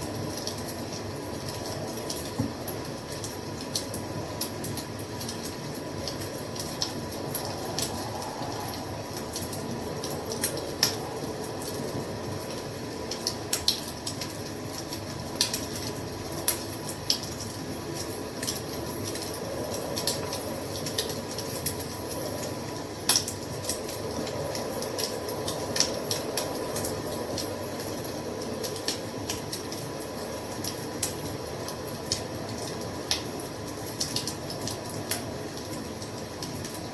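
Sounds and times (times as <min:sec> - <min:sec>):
fire crackling and popping: 0:00.0 - 0:36.9
wood fire rushing: 0:00.5 - 0:14.0.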